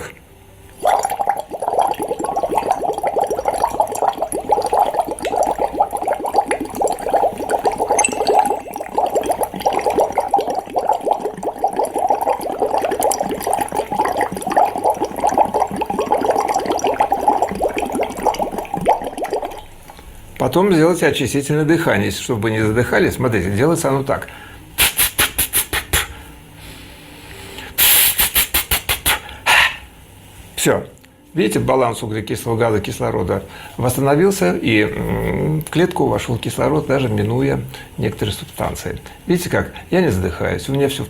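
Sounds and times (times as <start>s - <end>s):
bubbling through straw in water: 0.7s - 20.4s.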